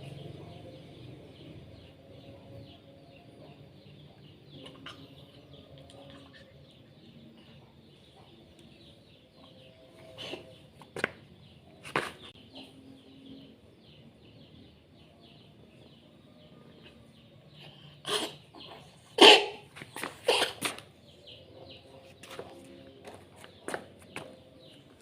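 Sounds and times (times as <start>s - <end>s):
cat hacking coughs: 19.2s - 19.6s, 20.2s - 20.8s.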